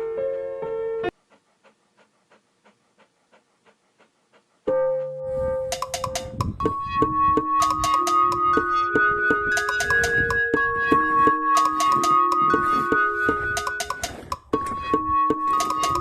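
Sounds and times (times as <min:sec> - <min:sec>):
bright keyboard melody: 0:04.7 - 0:16.0
instrumental music: 0:04.7 - 0:16.0.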